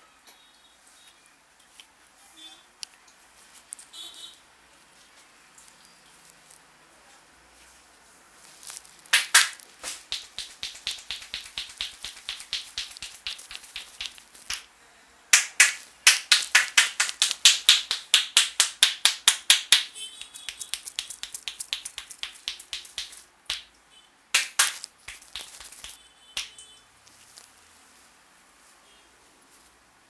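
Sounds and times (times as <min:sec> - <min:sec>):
hands slapping a head: 0:09.1 - 0:14.7, 0:15.4 - 0:23.7, 0:24.4 - 0:26.6.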